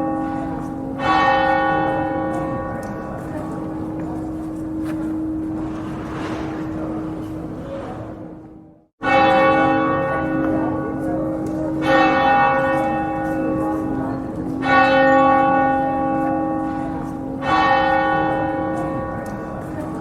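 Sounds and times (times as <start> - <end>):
church bell tolling: 0.0 - 20.0.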